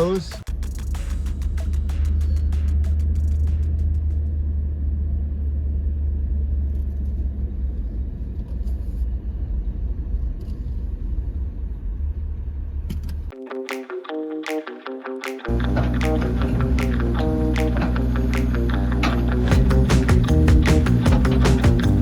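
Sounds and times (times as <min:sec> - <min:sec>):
music: 0:00.0 - 0:04.2, 0:13.3 - 0:22.0
clicks: 0:13.3 - 0:22.0
steady low rumble: 0:15.6 - 0:22.0.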